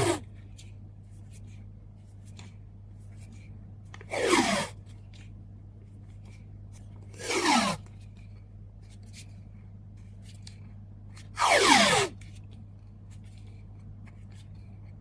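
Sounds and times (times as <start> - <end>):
adhesive tape pulled off roll: 7.2 - 7.8, 11.4 - 12.2.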